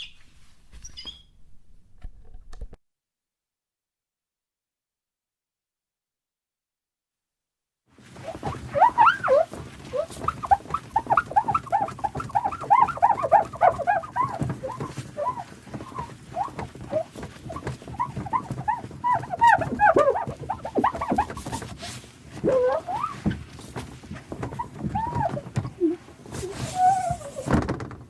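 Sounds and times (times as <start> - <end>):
towel rubbing: 8.0 - 27.8
paper towel squeaking on mirror: 8.0 - 28.0.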